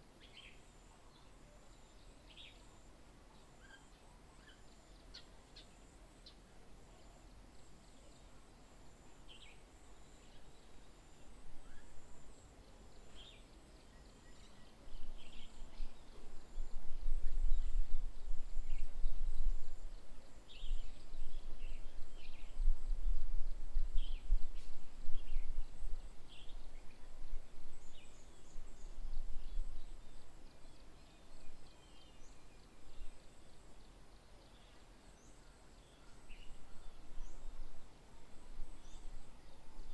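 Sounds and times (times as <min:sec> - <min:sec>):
wind buffeting microphone: 0:14.9 - 0:30.4.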